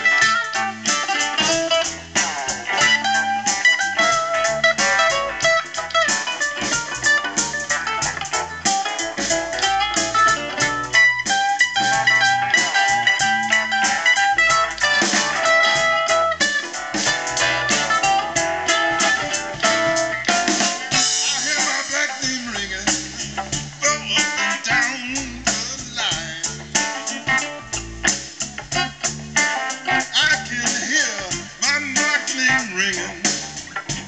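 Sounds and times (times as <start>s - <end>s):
live blues band playing: 0.0s - 34.0s
plucked mandolin and guitar: 0.0s - 34.0s.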